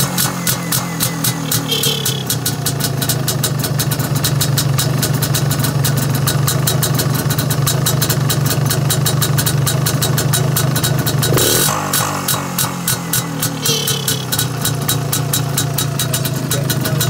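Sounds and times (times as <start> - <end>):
two-stroke engine idling: 0.0 - 17.0
fast even ticking: 0.1 - 2.7, 11.0 - 17.0.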